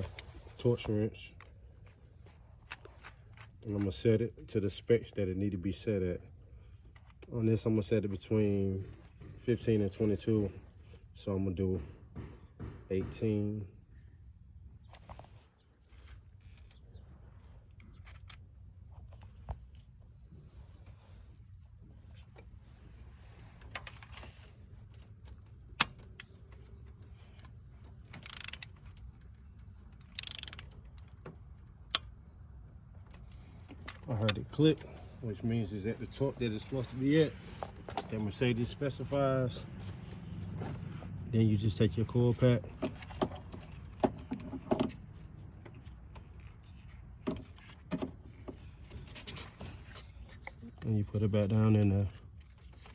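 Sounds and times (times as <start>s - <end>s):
plastic part being handled: 23.4s - 32.2s, 42.3s - 52.9s
ratchet rasping: 28.0s - 29.0s, 29.9s - 31.1s
torque wrench clicks: 28.2s - 28.8s, 30.1s - 30.8s.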